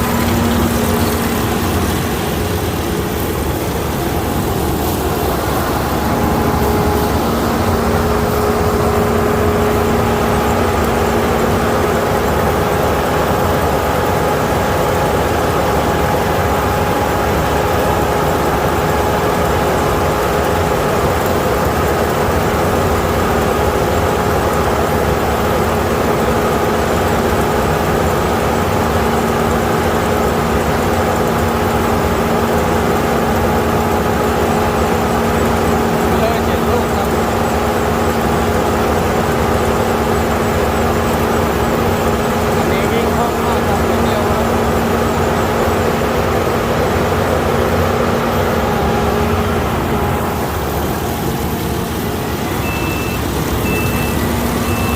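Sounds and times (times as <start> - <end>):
combine harvester engine running: 0.0 - 54.9
steady whine: 0.0 - 54.9.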